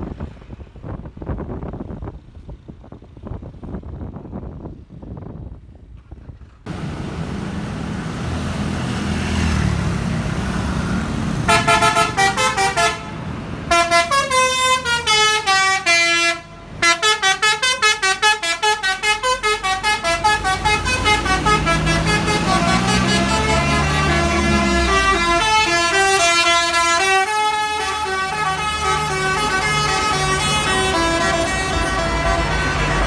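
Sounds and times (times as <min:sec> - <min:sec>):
bus engine: 0:00.0 - 0:33.0
musical air horn playing a tune: 0:11.5 - 0:33.0.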